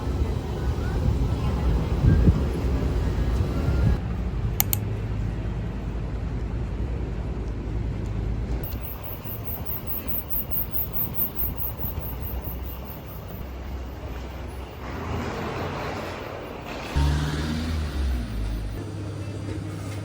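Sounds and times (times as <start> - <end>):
wind on microphone: 0.0 - 4.0
vehicle rumble: 0.0 - 20.0.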